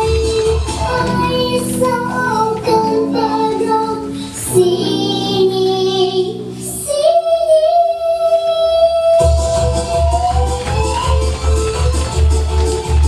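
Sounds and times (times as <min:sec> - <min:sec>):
young voice singing: 0:00.0 - 0:09.5
instrumental backing track: 0:00.0 - 0:13.0.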